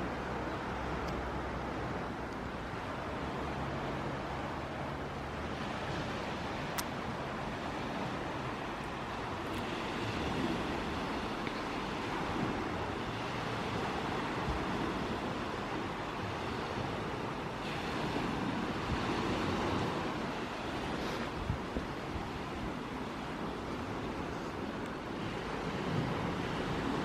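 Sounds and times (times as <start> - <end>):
steady rushing noise: 0.0 - 27.0.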